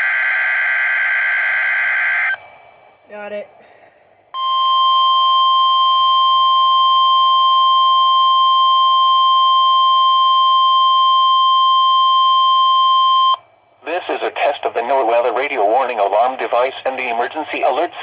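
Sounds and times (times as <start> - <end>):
steady alarm tone: 0.0 - 2.9, 4.4 - 13.4.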